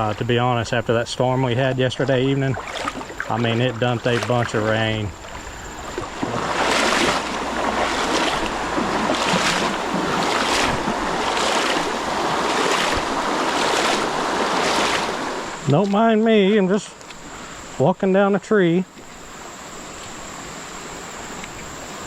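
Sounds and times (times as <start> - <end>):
water splashing around wading legs: 1.6 - 16.1.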